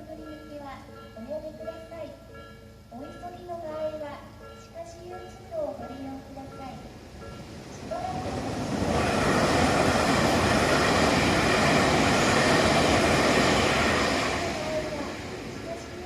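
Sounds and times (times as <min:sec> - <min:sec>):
electric train wheels on rails: 0:00.0 - 0:16.0.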